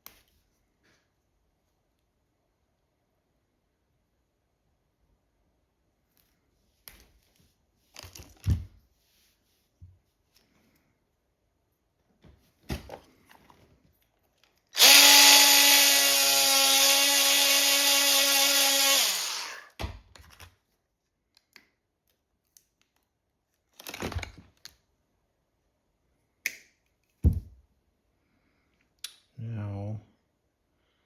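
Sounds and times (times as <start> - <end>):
power tool motor running: 14.8 - 19.7.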